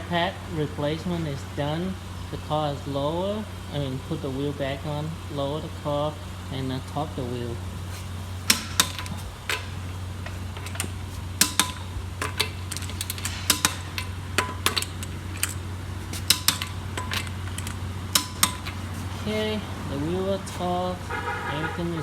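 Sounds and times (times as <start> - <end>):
steady low hum: 0.0 - 22.0
torque wrench clicks: 8.5 - 18.9.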